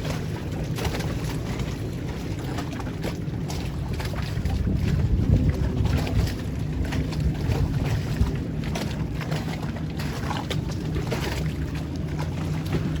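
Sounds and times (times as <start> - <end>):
boat motor humming: 0.0 - 13.0
water: 0.0 - 13.0.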